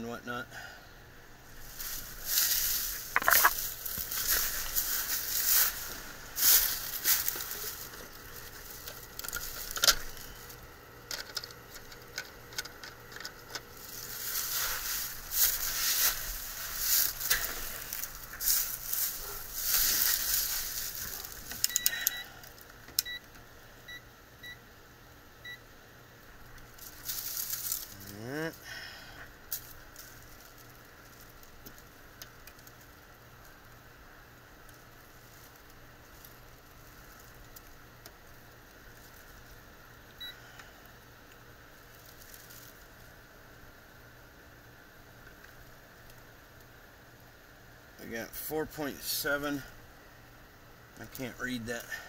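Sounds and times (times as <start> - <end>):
rustling handling noise: 1.4 - 21.8, 26.6 - 28.2, 41.7 - 43.3.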